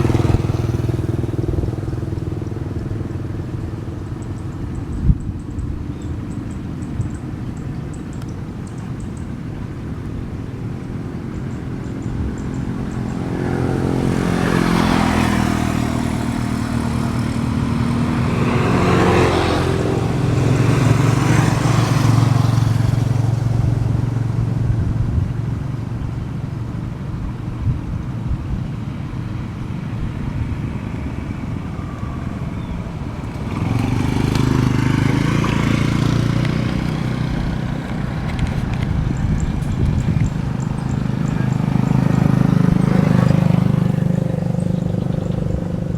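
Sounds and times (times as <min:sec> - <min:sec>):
vehicles passing on road: 0:00.0 - 0:45.9.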